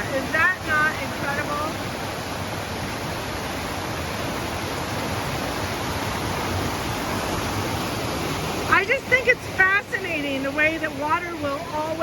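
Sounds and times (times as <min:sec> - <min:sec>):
waterfalls cascading: 0:00.0 - 0:12.0.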